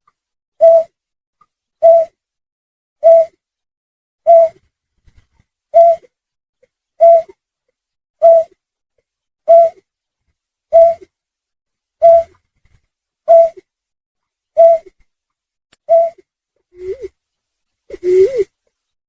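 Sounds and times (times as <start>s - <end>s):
snipe hooting call: 0.6s - 0.9s, 1.8s - 2.1s, 3.0s - 3.3s, 4.3s - 4.6s, 7.0s - 7.3s, 8.2s - 8.5s, 9.5s - 9.8s, 10.7s - 11.0s, 12.0s - 12.3s, 13.3s - 13.6s, 14.6s - 14.9s, 15.9s - 16.2s, 17.9s - 18.5s.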